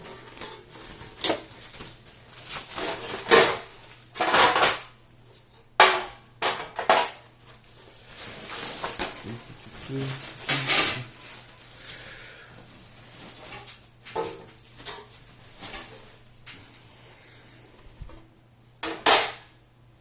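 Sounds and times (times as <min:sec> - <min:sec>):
packaging rustling: 0:00.2 - 0:04.6, 0:08.0 - 0:13.8
parts knocking and clattering: 0:02.7 - 0:05.0, 0:05.8 - 0:07.2.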